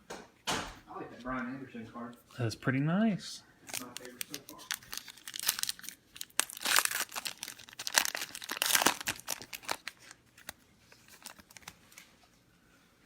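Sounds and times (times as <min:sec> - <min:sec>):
card pack wrapper tearing and crinkling: 0:03.7 - 0:12.0.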